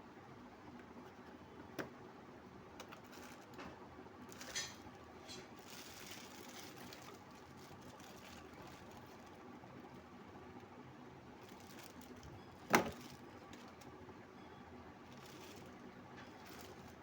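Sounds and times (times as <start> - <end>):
packaging rustling: 2.8 - 10.1, 11.4 - 14.0, 15.0 - 17.0.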